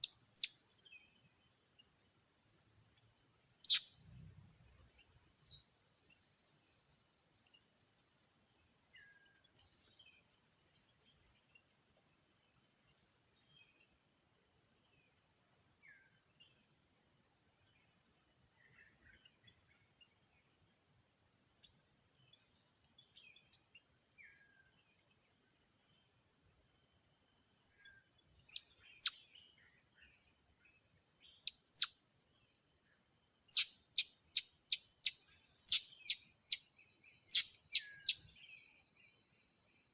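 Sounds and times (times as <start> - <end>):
insects droning: 0.0 - 39.9
parrot chirps: 3.6 - 3.9, 28.5 - 29.4, 31.4 - 32.0, 33.5 - 38.2.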